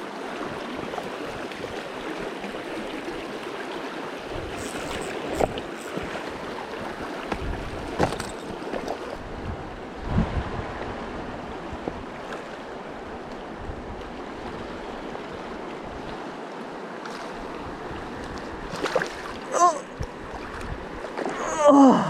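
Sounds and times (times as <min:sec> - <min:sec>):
short vocal cry: 0:19.5 - 0:20.0, 0:21.3 - 0:22.0.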